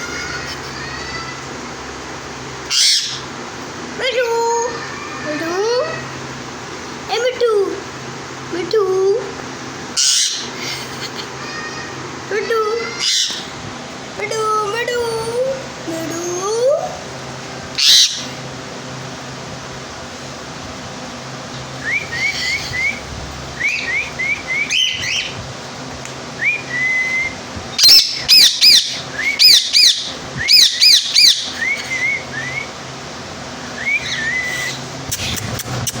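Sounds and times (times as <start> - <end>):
parakeet chirping and calling: 0.0 - 1.4, 2.6 - 3.4, 9.8 - 13.6, 17.7 - 18.4, 21.5 - 25.5, 26.3 - 32.8, 33.6 - 36.0.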